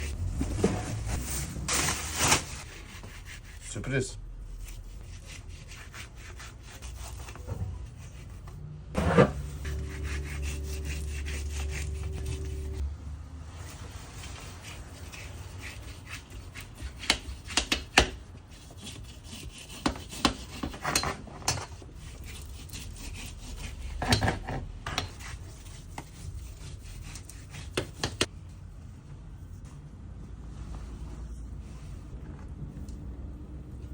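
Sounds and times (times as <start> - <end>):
scraping and rubbing: 0.0 - 12.8.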